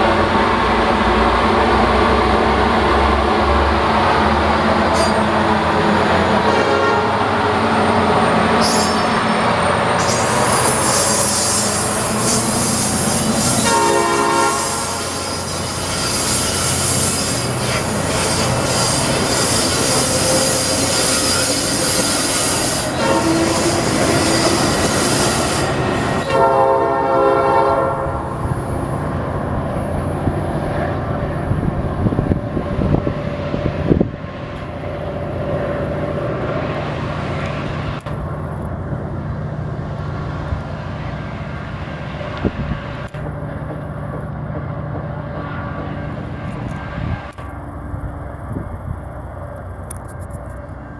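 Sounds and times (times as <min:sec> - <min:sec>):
train wheels rumbling on rail: 0:00.0 - 0:50.9
multi-chime train horn: 0:13.6 - 0:15.5, 0:18.7 - 0:25.4, 0:26.2 - 0:28.3.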